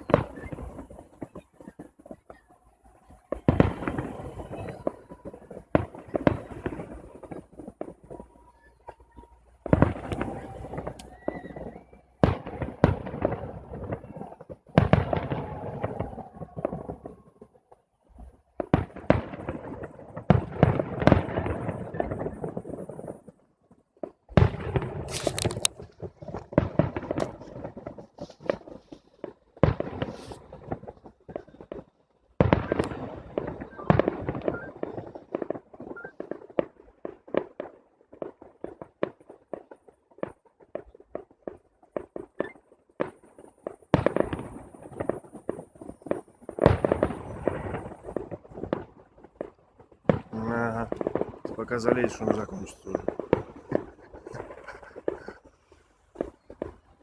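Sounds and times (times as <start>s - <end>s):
rapid crackle of small pops: 0.0s - 57.0s
firework shells bursting: 24.0s - 57.0s.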